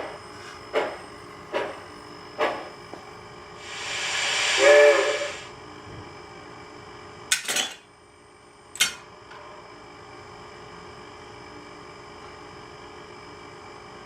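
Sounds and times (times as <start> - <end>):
steam hissing: 3.6 - 5.5
train whistle toot: 3.7 - 5.5.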